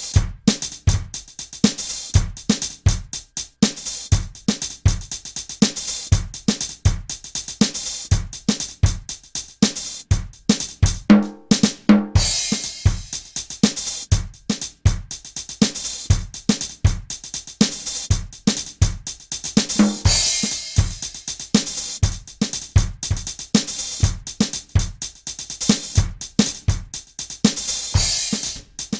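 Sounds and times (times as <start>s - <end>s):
drum kit playing a steady beat: 0.0s - 28.9s
tom fill: 10.1s - 15.2s, 17.9s - 24.5s, 27.7s - 28.9s.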